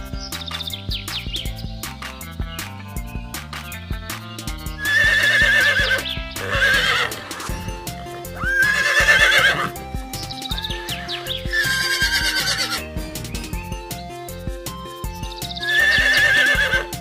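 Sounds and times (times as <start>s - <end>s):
background music: 0.0s - 17.0s
horse whinnying: 4.8s - 7.5s, 8.4s - 9.8s, 10.9s - 12.8s, 15.7s - 17.0s.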